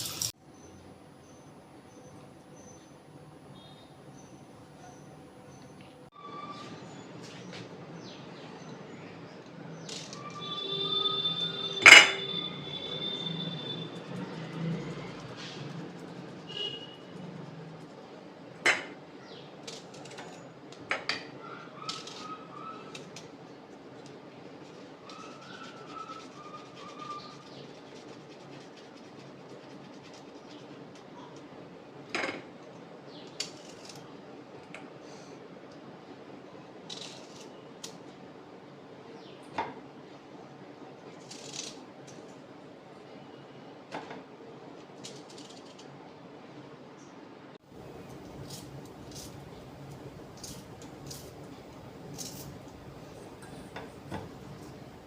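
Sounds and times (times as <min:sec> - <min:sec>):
dishes and cutlery clinking: 0:11.8 - 0:12.4
steady low hum: 0:47.7 - 0:55.0.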